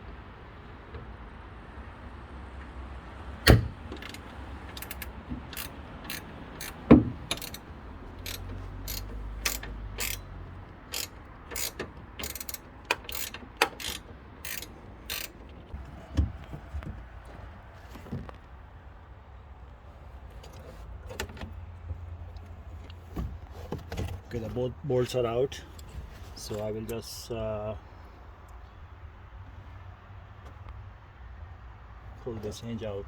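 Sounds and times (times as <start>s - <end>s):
ratcheting wrench clicking: 3.5s - 10.3s, 10.9s - 15.4s
metallic knocks: 3.5s - 15.4s.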